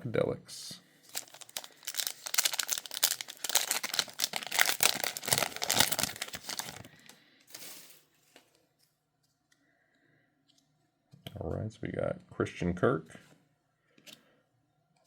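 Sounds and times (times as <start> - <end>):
wrapper tearing and crinkling: 1.1 - 8.0.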